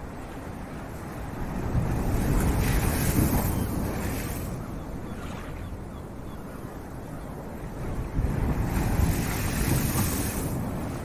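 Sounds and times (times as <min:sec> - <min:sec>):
wind rumble on microphone: 0:00.0 - 0:11.0
wave breaking and washing up: 0:08.1 - 0:11.0.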